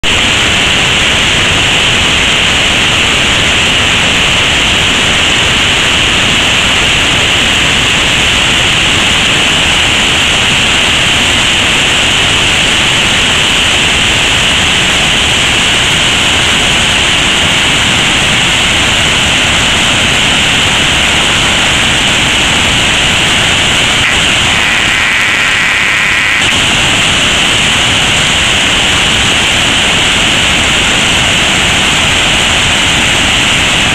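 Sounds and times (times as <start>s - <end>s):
waterfall roaring: 0.0s - 33.9s
brief pitched tone: 23.9s - 26.6s.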